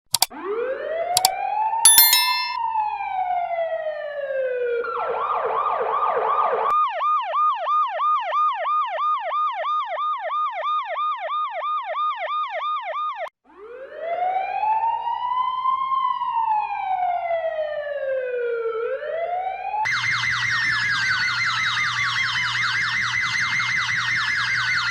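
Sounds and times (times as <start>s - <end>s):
emergency siren wail and yelp: 13.6s - 24.9s.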